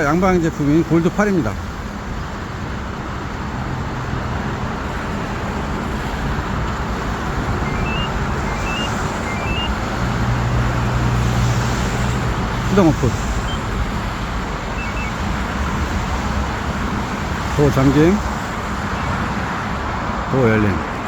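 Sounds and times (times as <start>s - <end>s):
truck engine idling: 0.7s - 20.8s
faint rising electronic chirps: 7.6s - 9.8s, 12.7s - 13.8s, 14.6s - 15.3s.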